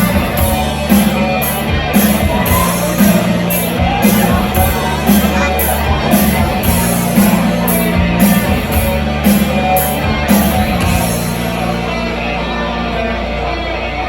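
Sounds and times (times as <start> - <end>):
steady drum beat: 0.0 - 11.8
rock music with electric guitar: 0.0 - 14.0.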